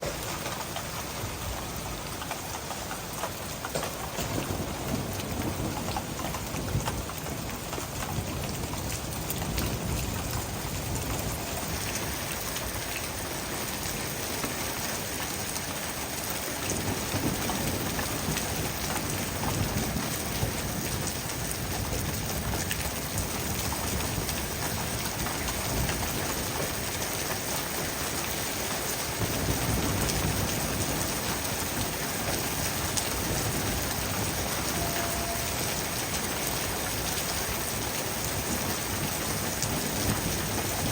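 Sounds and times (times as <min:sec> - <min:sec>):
heavy rain hissing: 0:24.5 - 0:40.9.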